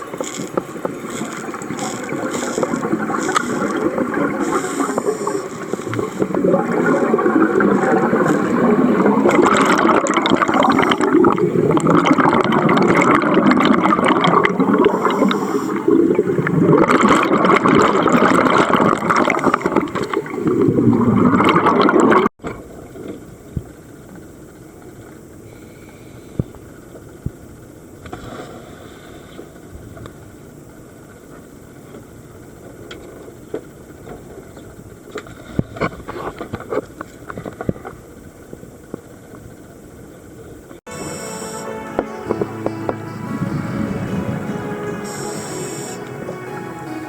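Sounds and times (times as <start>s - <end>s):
sea water churning and gurgling: 0.0s - 47.0s
low steady hiss: 22.5s - 47.0s.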